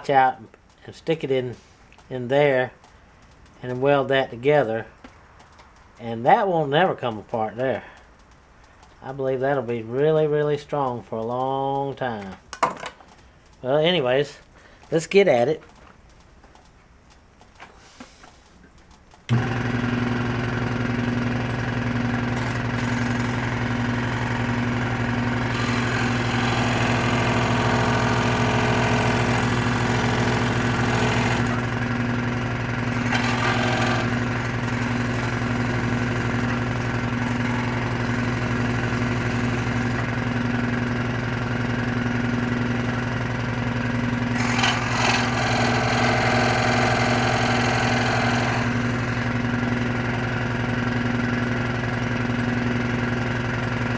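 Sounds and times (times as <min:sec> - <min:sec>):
power tool cutting plastic: 0:19.3 - 0:40.7, 0:44.2 - 0:49.9
power tool humming: 0:19.3 - 0:53.9.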